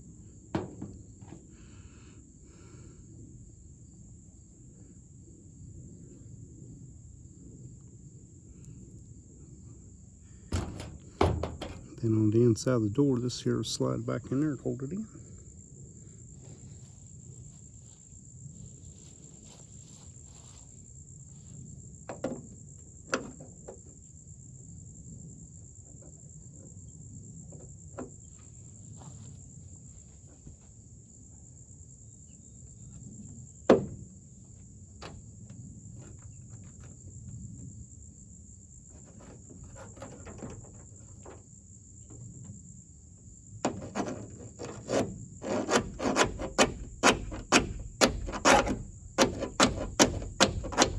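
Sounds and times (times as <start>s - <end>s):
crickets chirping: 0.0s - 50.9s
door lock parts clicking and knocking: 10.5s - 12.2s, 43.6s - 50.9s.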